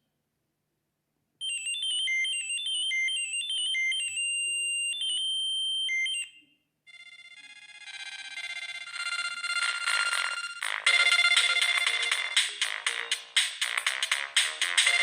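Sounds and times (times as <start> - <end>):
mobile phone ringtone beeping: 1.4 - 13.3
phone ringtone melody: 1.4 - 15.0.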